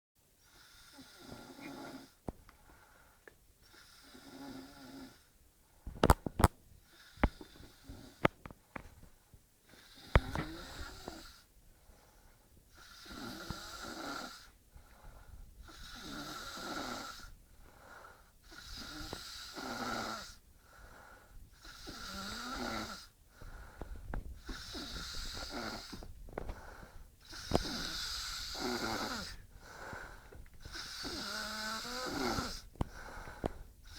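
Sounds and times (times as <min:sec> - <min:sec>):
loud rattling snoring: 0:09.8 - 0:11.4, 0:12.8 - 0:14.5, 0:15.8 - 0:17.3, 0:18.5 - 0:20.4, 0:21.6 - 0:23.1, 0:24.4 - 0:26.0, 0:27.2 - 0:29.4, 0:30.7 - 0:32.7.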